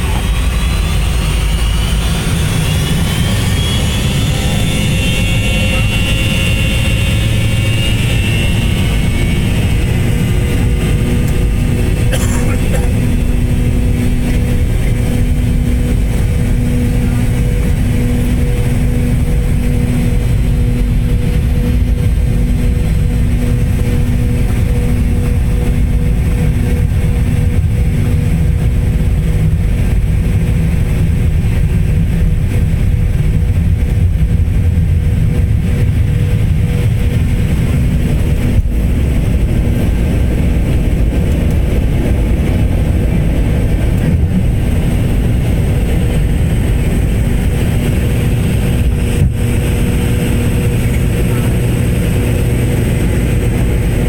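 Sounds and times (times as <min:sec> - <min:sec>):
jet engines and airflow rumble: 0:00.0 - 0:54.0.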